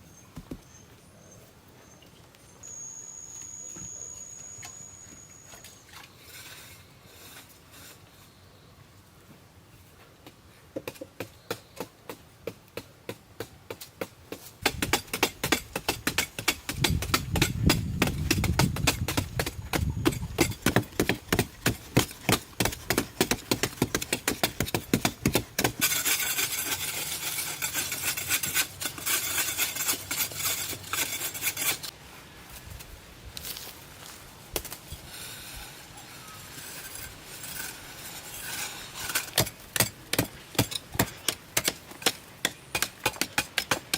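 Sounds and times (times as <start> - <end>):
high scraping: 14.6 - 32.0, 34.8 - 39.9.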